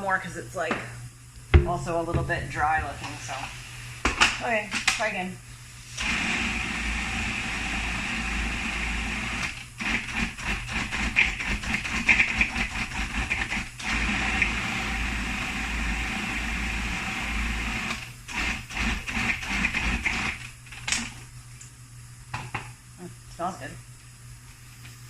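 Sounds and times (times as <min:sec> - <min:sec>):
food processor running: 0:06.0 - 0:20.5.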